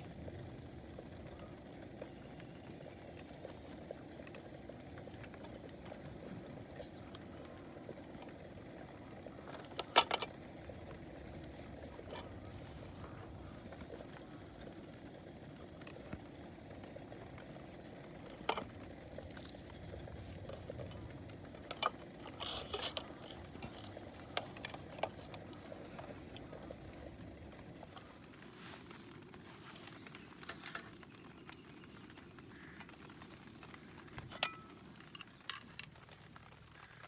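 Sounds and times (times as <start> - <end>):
low steady rumble: 0.0 - 30.4
metal cookware clinking: 34.4 - 34.8.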